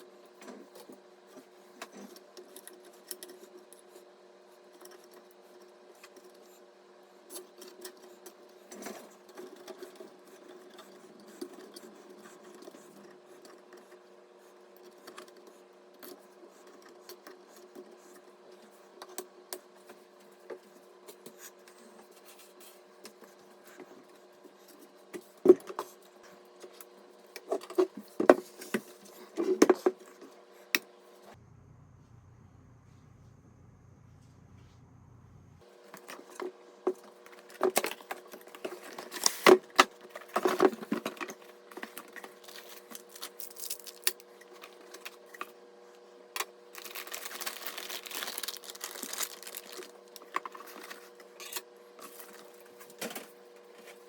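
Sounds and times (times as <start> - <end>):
steady low hum: 30.0 - 54.0.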